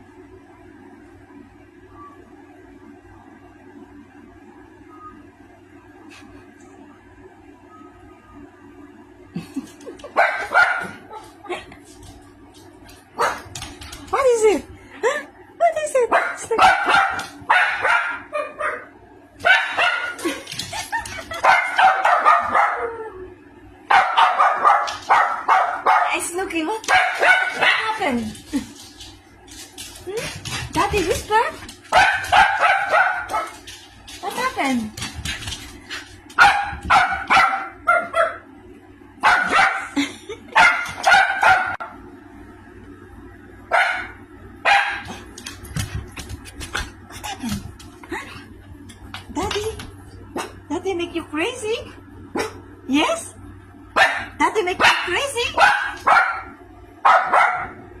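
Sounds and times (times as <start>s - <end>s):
small dog barking and yipping: 10.0s - 11.4s, 13.1s - 13.8s, 16.1s - 20.4s, 21.4s - 23.1s, 23.9s - 26.2s, 26.8s - 28.2s, 31.2s - 35.2s, 36.4s - 38.5s, 39.2s - 41.9s, 54.0s - 57.8s
small dog barking sharply: 23.9s - 26.2s, 36.4s - 38.4s, 54.0s - 57.8s.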